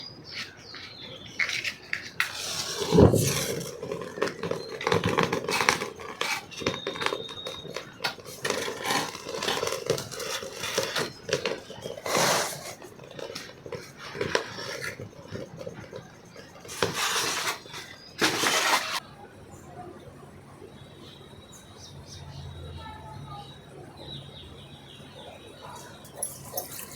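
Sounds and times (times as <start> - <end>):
dishes and utensils clattering: 25.6 - 26.9.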